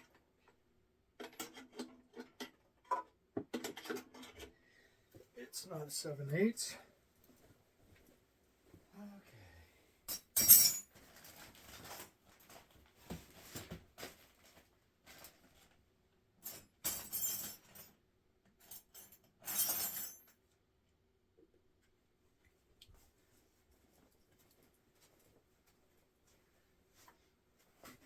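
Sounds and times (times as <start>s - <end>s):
metal wrenches clattering: 10.1s - 10.9s.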